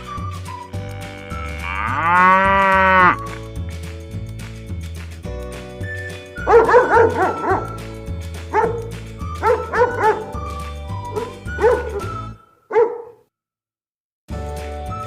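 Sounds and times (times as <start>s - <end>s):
background music: 0.0s - 13.0s, 14.3s - 15.0s
dog barking and yipping: 6.4s - 7.8s, 8.5s - 10.4s, 11.0s - 13.2s.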